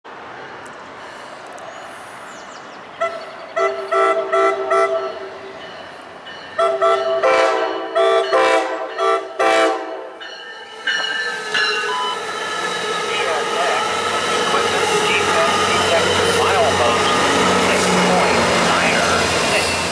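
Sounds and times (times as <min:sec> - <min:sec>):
train running noise: 0:03.0 - 0:19.9
train air horn toots: 0:03.6 - 0:05.2, 0:06.6 - 0:10.2.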